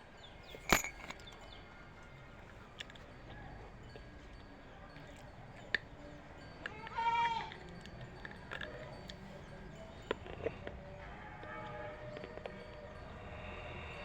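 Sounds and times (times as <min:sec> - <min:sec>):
animal bleat: 0:06.7 - 0:07.6.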